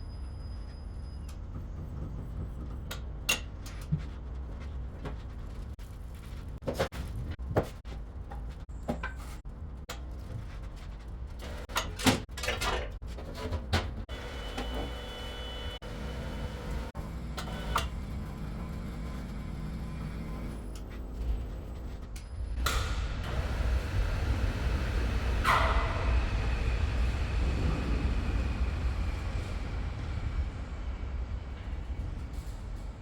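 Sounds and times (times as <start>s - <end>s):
diesel engine running: 14.1s - 21.9s.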